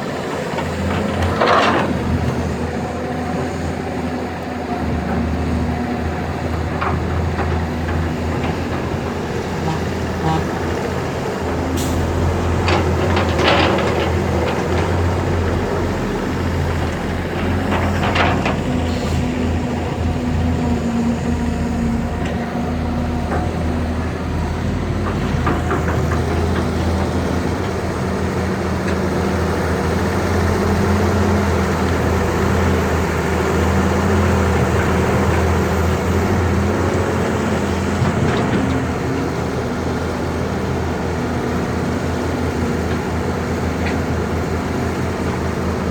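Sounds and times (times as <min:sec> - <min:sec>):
excavator diesel engines running: 0:00.0 - 0:45.9.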